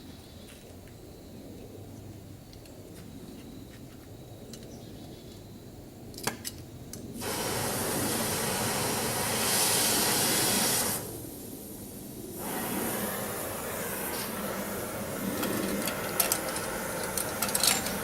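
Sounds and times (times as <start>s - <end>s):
spraying hiss: 7.2s - 18.0s.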